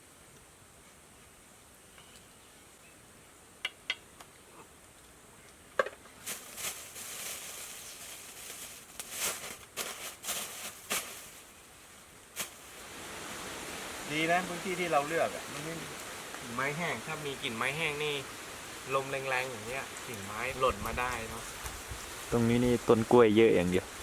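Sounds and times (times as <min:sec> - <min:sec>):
dense rustling and crackling: 0:05.8 - 0:24.0.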